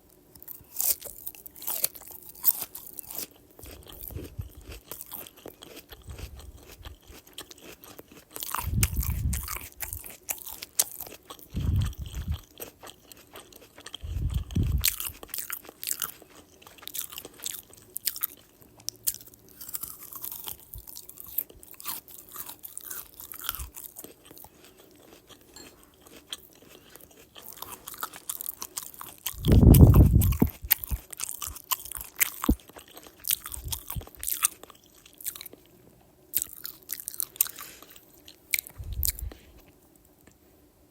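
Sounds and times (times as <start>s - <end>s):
person chewing crisp apple: 0.0s - 40.4s
dull low thumps: 29.4s - 31.0s.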